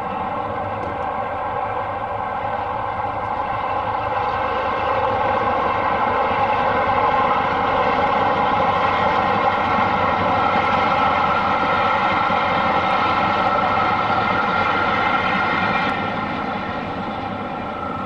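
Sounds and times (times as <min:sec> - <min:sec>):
train rushing: 0:00.0 - 0:18.0.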